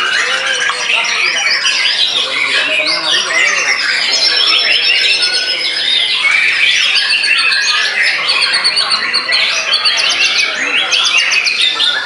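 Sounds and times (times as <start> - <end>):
bird song whistles and trills: 0.0 - 12.0.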